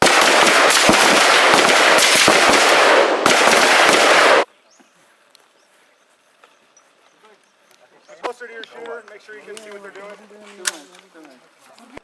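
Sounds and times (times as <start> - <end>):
guns firing: 0.0 - 4.5.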